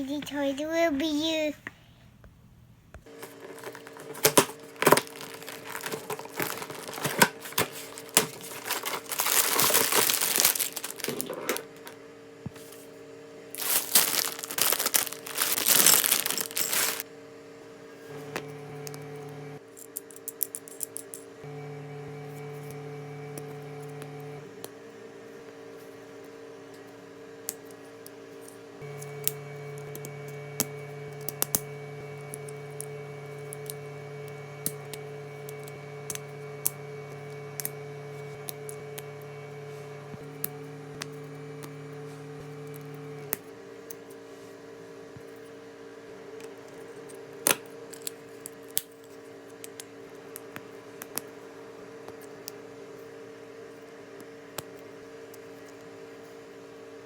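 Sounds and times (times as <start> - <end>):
packaging being handled: 3.1 - 12.0, 13.6 - 17.0.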